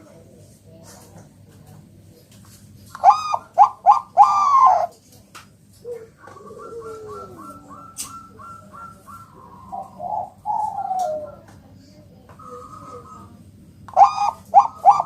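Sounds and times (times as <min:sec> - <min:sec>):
dove cooing: 0:03.0 - 0:05.0, 0:05.8 - 0:15.0.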